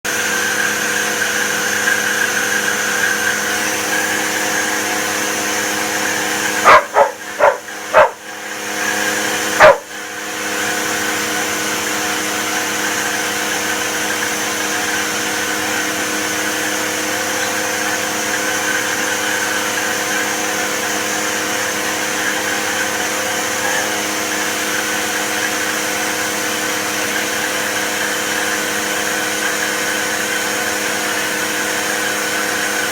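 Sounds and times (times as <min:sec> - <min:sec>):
vacuum cleaner running: 0:00.1 - 0:32.9
dog barking: 0:06.6 - 0:08.3, 0:09.6 - 0:09.9, 0:23.6 - 0:24.0.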